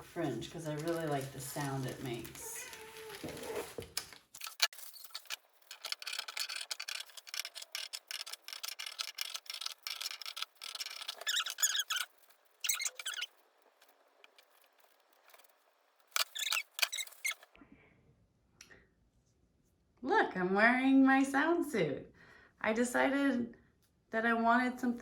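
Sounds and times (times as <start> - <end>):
thin plastic crinkling: 0.0 - 17.4.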